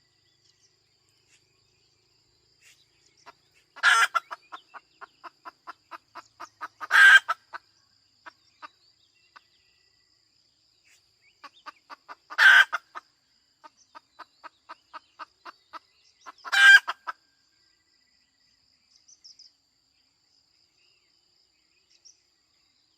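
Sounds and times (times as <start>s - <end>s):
hen clucking: 3.2s - 7.6s, 11.4s - 13.0s, 13.7s - 17.2s
hen squawking: 3.8s - 4.4s.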